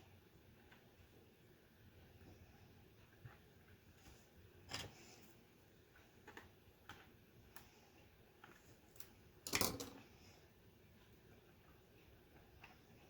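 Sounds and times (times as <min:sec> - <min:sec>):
plastic parts clattering: 0:09.5 - 0:10.0.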